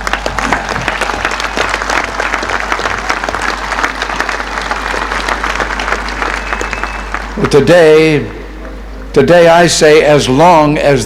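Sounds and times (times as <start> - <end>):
crowd applauding: 0.0 - 8.8
low hum: 0.0 - 11.0.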